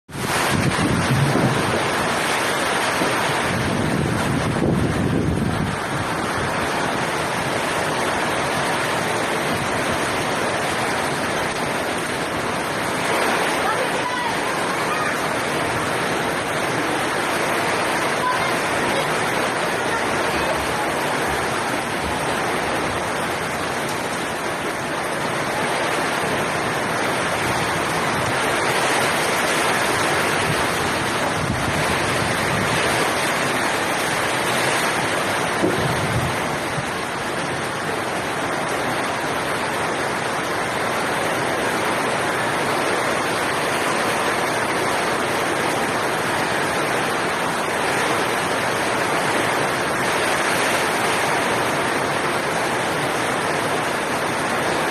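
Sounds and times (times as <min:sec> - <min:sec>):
heavy rain pouring: 0:00.0 - 0:54.9
rushing water: 0:00.1 - 0:54.9.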